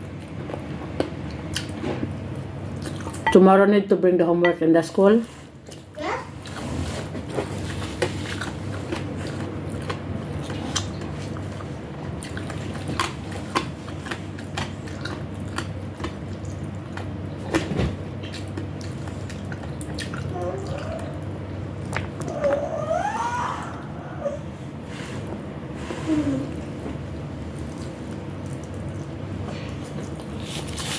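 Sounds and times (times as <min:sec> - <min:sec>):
steady low hum: 0:00.0 - 0:30.9
eating clicks and smacks: 0:00.2 - 0:03.2, 0:08.0 - 0:22.6, 0:27.5 - 0:30.4.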